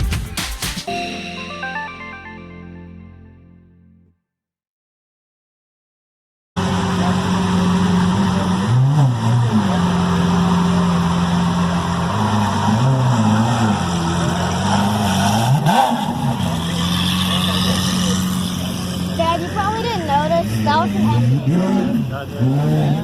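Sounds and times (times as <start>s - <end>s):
tyres hissing on wet road: 6.6s - 19.6s
car engine running: 6.6s - 23.0s.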